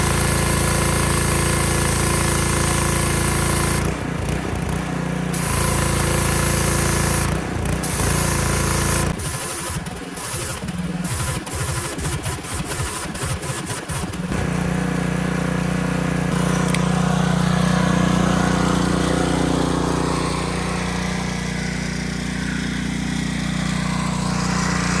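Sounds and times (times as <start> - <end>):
small engine running: 0.0 - 25.0
uneven rapid clicking: 9.1 - 14.4.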